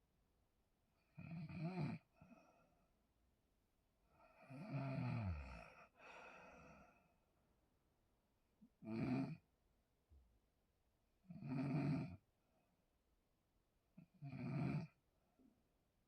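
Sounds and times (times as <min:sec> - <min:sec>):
breathy out-breath: 0:05.7 - 0:07.2.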